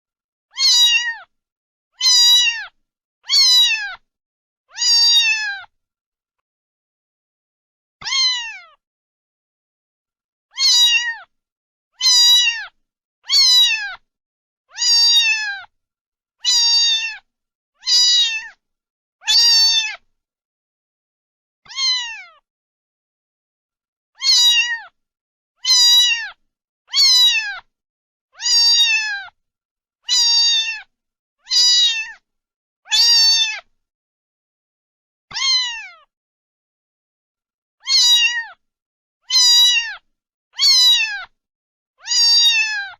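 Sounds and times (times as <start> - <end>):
cat meowing: 0.5 - 1.3, 2.0 - 4.0, 4.7 - 5.7, 8.0 - 8.8, 10.5 - 11.3, 12.0 - 14.0, 14.7 - 15.7, 16.4 - 18.6, 19.2 - 20.1, 21.6 - 22.4, 24.2 - 25.0, 25.6 - 27.7, 28.4 - 29.4, 30.0 - 32.2, 32.9 - 33.7, 35.3 - 36.1, 37.8 - 38.6, 39.2 - 41.4, 42.0 - 42.9.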